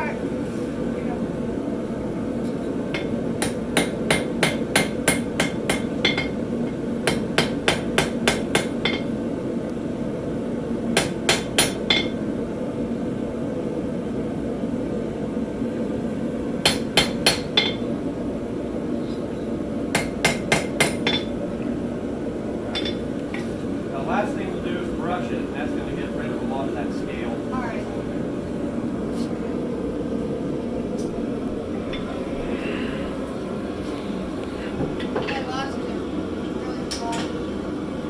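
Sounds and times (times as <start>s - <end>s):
hammer striking hot steel on anvil: 2.5s - 9.2s, 10.9s - 12.2s, 16.6s - 17.9s, 19.9s - 21.4s, 22.7s - 23.5s.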